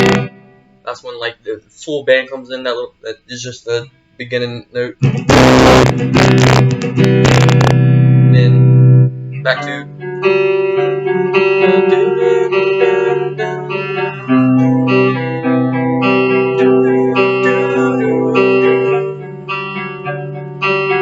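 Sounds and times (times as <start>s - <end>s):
low bass note: 0.0s - 0.3s
guitar picking chords: 0.0s - 1.6s, 2.2s - 21.0s.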